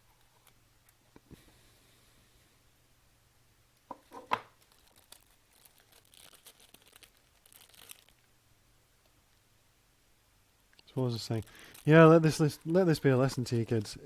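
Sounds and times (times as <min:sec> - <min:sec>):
light crinkling and rustling: 0:00.0 - 0:01.5, 0:03.9 - 0:08.4, 0:10.7 - 0:14.0.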